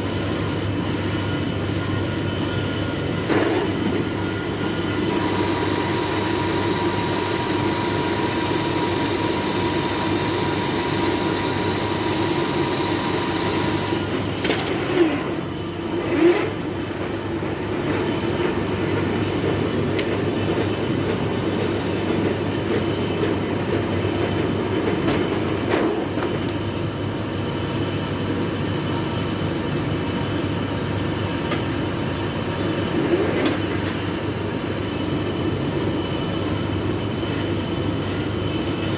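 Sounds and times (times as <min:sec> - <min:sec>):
metal lathe running: 0:02.3 - 0:30.5.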